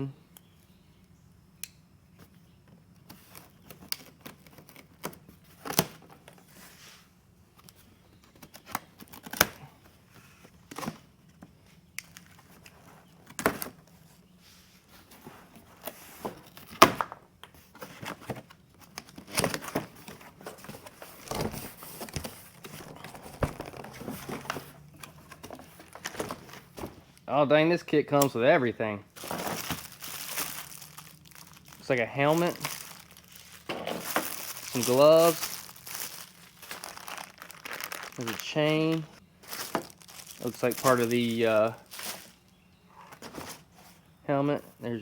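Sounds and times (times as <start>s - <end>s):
cardboard scraping and thunking: 19.3s - 27.0s, 29.2s - 31.0s, 33.4s - 37.3s
packing tape ripping: 29.2s - 42.4s.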